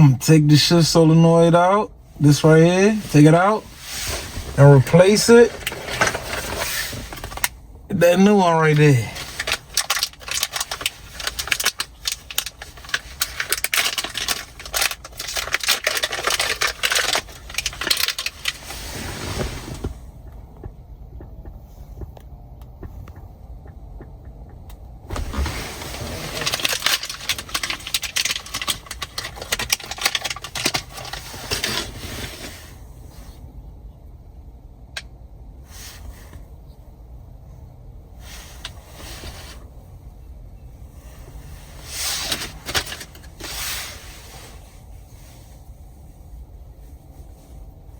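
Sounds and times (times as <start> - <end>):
clicking rattling and scraping parts: 3.1 - 7.5, 8.9 - 20.0, 25.1 - 32.5, 41.3 - 43.9.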